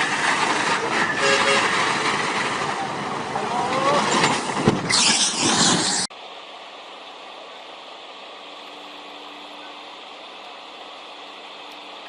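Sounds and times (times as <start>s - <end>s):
heavy vehicle noise: 0.0s - 12.0s
loud hissing rush: 0.0s - 12.0s.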